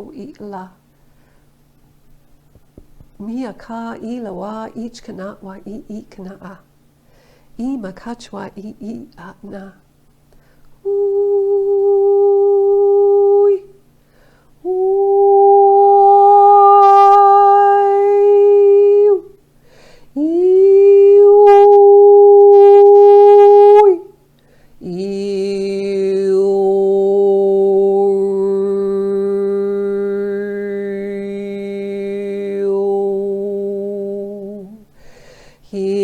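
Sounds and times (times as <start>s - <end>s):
woman toning long held notes: 10.8s - 13.7s.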